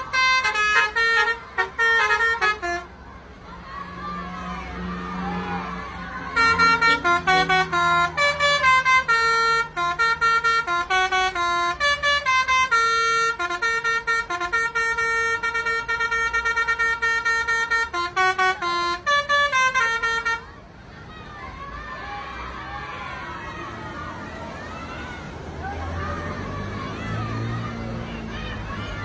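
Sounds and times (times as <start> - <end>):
musical air horn playing a tune: 0.0 - 2.9, 6.4 - 20.4.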